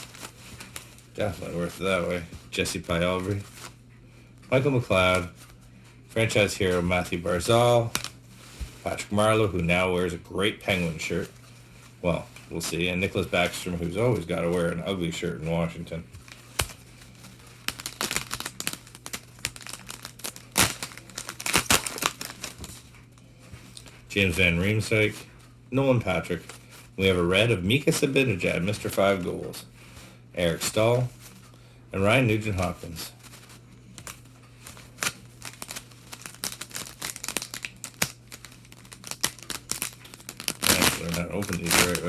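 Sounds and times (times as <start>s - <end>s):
plastic wrapper crinkling: 0.0s - 3.8s, 6.3s - 9.8s, 15.6s - 23.0s, 32.5s - 42.0s
faint steady hum: 0.0s - 42.0s.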